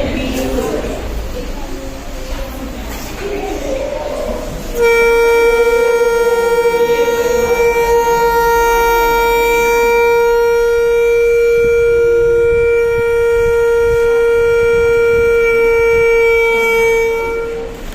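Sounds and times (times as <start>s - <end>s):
vuvuzela long note: 4.7s - 17.9s.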